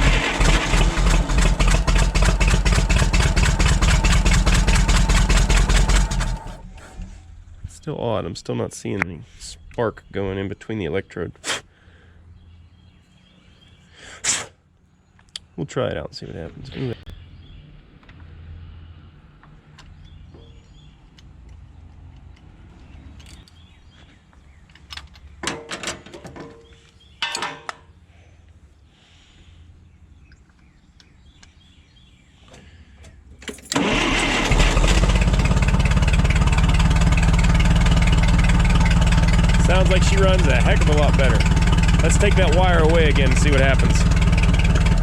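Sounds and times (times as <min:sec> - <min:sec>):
forklift engine starting and running: 0:00.0 - 0:07.6, 0:33.4 - 0:45.0.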